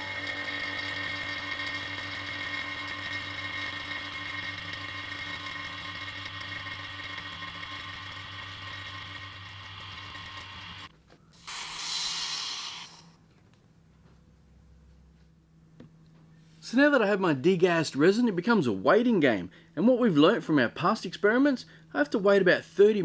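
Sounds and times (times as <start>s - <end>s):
vacuum pump humming and whining: 0.0s - 13.1s
air hissing into chamber: 11.4s - 13.2s.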